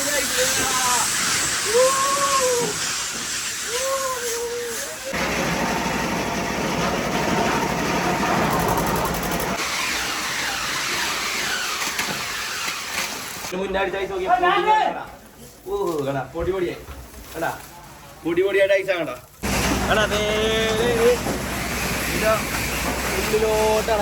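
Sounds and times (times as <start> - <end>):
ice-crushing machine hiss: 0.0 - 13.5, 19.4 - 24.0.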